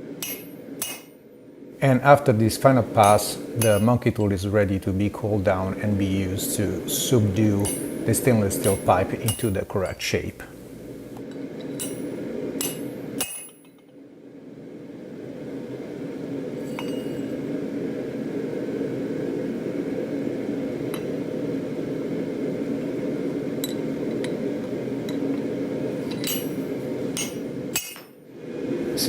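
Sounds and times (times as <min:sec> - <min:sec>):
steel tools clinking: 0:00.2 - 0:01.1, 0:03.0 - 0:04.4, 0:07.6 - 0:10.0, 0:11.3 - 0:13.8, 0:25.0 - 0:28.2
low rushing noise: 0:28.3 - 0:29.0.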